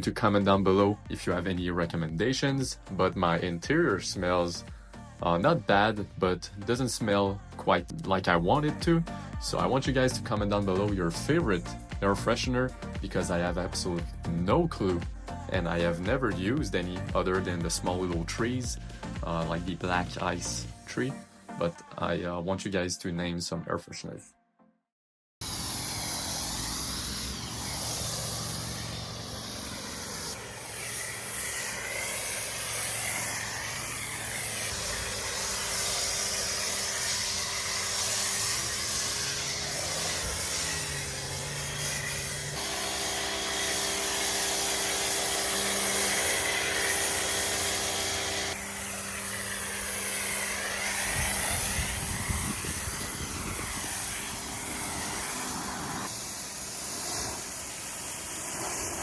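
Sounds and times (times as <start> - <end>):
pressure washer spraying water: 0.1 - 5.4, 8.5 - 20.7, 25.4 - 59.0
pressure washer motor hum: 25.4 - 59.0.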